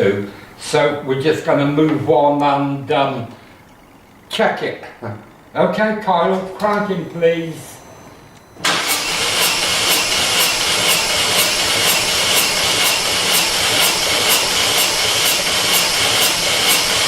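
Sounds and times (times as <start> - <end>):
engine cranking on starter motor: 8.6 - 17.0.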